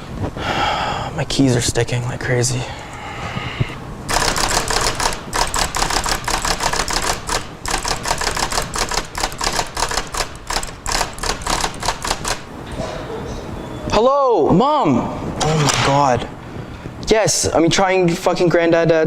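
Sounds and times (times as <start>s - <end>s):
typewriter key strikes: 4.1s - 12.5s.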